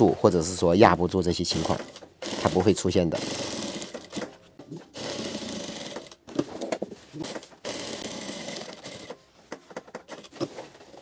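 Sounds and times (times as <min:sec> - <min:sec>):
sewing machine stitching: 0:01.5 - 0:09.2.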